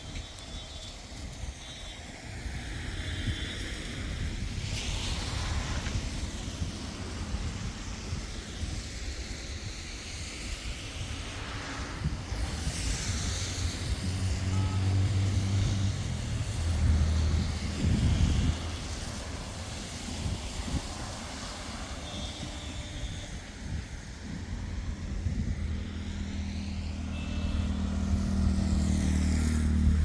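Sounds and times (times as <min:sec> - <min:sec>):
tyres hissing on wet road: 0:00.0 - 0:30.0
wind rumbling on microphone: 0:00.0 - 0:30.0.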